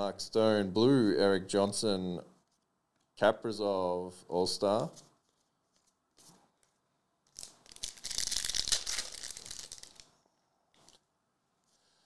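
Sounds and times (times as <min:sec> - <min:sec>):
card pack wrapper tearing: 0:07.3 - 0:10.1.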